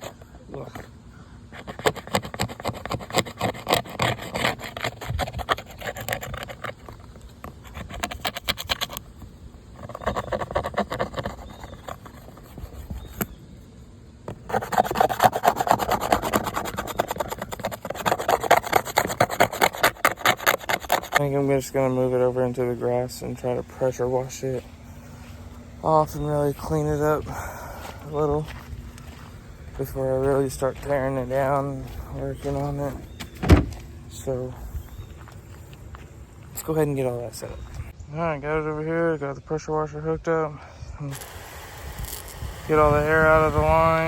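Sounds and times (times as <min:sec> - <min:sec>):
paper towel scrubbing plastic: 0:01.6 - 0:09.0, 0:09.8 - 0:13.3, 0:14.3 - 0:21.4.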